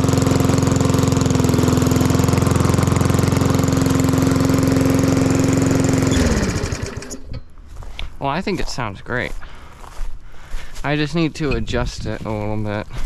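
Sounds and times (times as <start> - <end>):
lawn mower engine running: 0.0 - 7.5.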